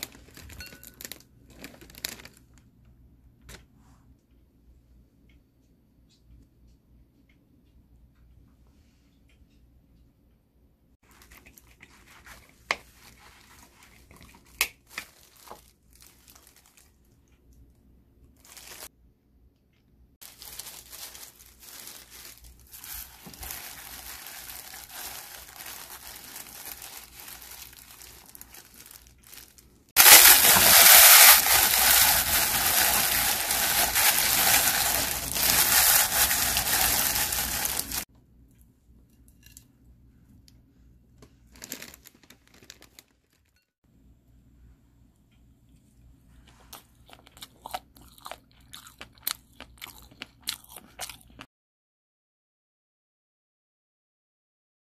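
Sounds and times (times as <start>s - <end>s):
crinkling and rustling: 0.0s - 2.7s, 11.0s - 17.4s, 18.4s - 18.9s, 20.2s - 38.1s, 41.2s - 43.6s.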